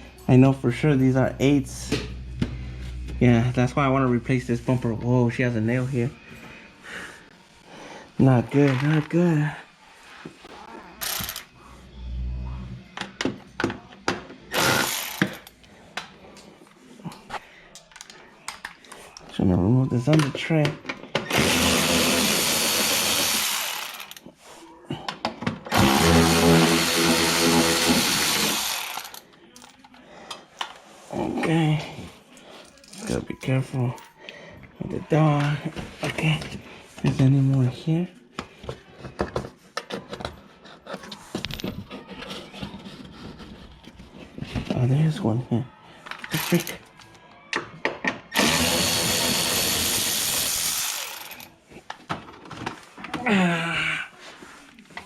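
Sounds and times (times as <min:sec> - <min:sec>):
power tool whirring: 0:14.5 - 0:15.5, 0:21.3 - 0:24.2, 0:25.7 - 0:29.2, 0:46.3 - 0:46.8, 0:48.4 - 0:51.5.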